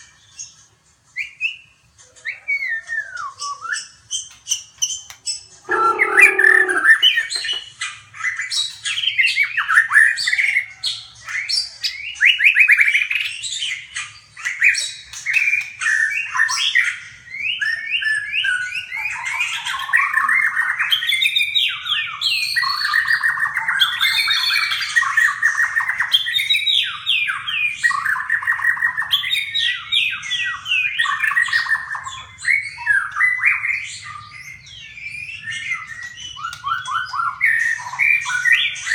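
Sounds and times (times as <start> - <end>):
songbirds chattering: 0.0 - 38.9
lower-pitched bird call: 5.7 - 7.6.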